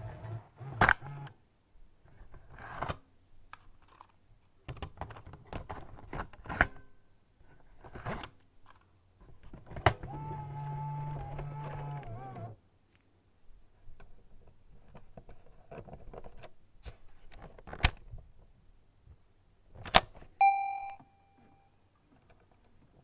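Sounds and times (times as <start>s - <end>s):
short electronic beep: 20.4s - 21.8s.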